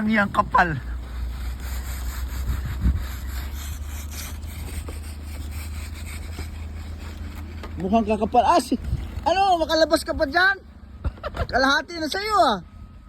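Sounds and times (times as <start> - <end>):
snow scraping off car: 0.0 - 10.0.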